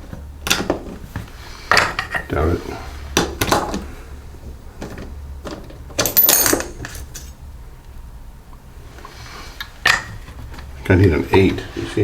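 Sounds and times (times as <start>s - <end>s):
metal tools clinking on workbench: 6.0s - 7.3s
metallic clatter and ring: 6.1s - 7.0s.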